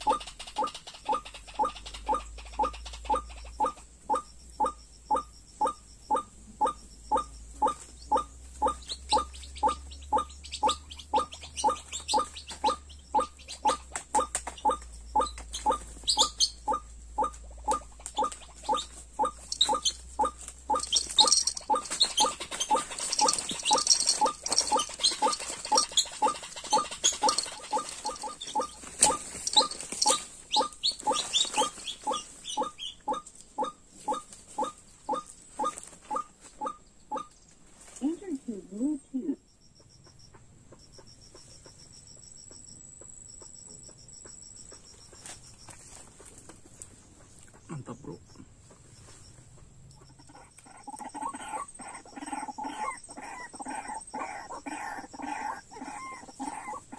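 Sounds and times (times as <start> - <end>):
higher bird chirps: 0.0 - 37.5
waterhen calling: 6.1 - 36.3.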